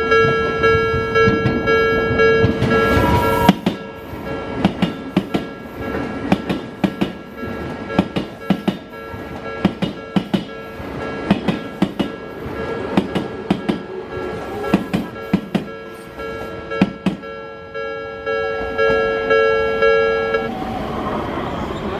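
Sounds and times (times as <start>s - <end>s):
crossing warning bell ringing: 0.0s - 20.5s
train wheels clacking over rail joints: 0.2s - 17.3s.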